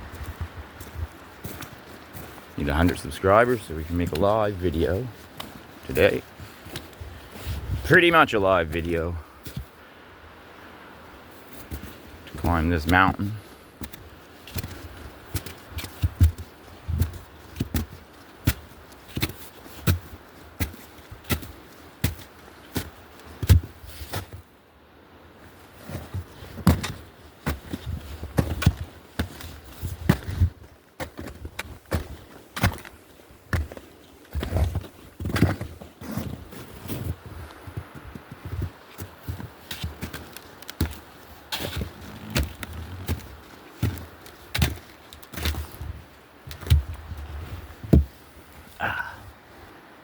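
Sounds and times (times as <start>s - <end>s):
footsteps walking: 0.0s - 9.7s, 25.9s - 45.8s.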